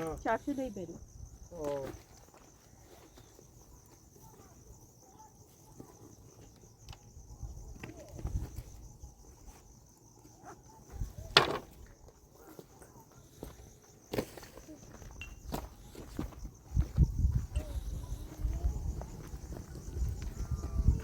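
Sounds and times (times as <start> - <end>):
high insect chirring: 14.6 - 21.0.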